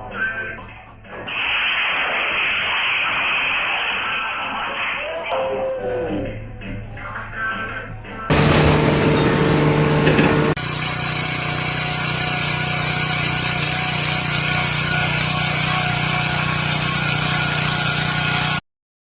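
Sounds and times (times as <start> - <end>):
loud harsh sound: 8.3 - 10.6
machine humming: 8.3 - 11.7.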